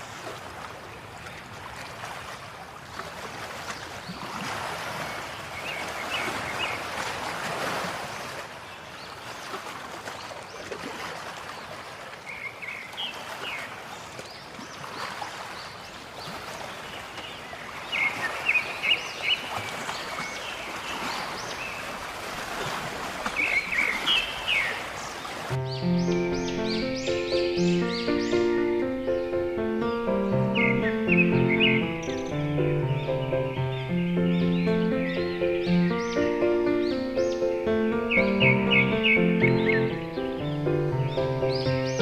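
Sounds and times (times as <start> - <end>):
water rushing: 0.0 - 42.0
high bird chirps: 25.6 - 42.0.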